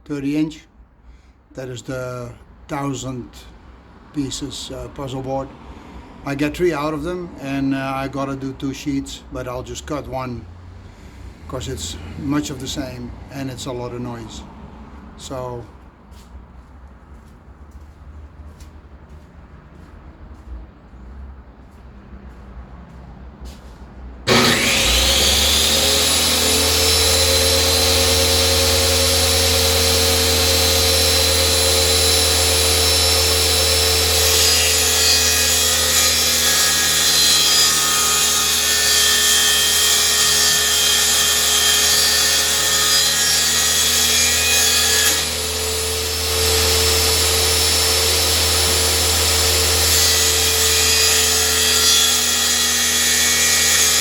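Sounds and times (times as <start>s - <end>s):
power saw cutting wood: 11.4s - 14.4s, 24.3s - 54.0s.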